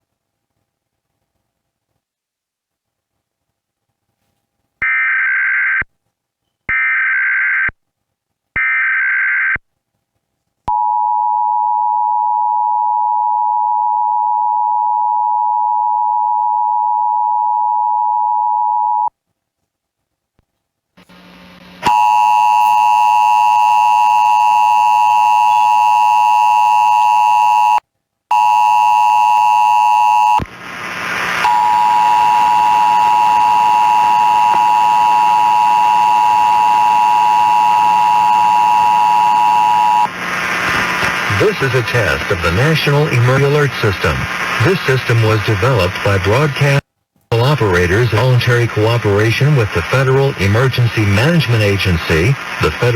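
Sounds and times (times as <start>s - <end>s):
high whine: 28.4s - 52.9s.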